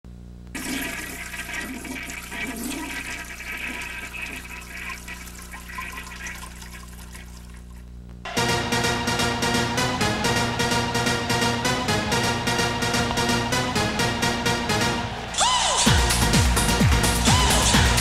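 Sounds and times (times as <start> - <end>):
low electrical hum: 0.1 - 8.3
rushing water: 0.6 - 7.6.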